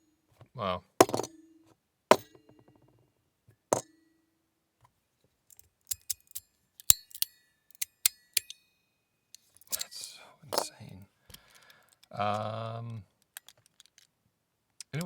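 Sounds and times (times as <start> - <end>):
sharp metal clacks: 5.5 - 8.7.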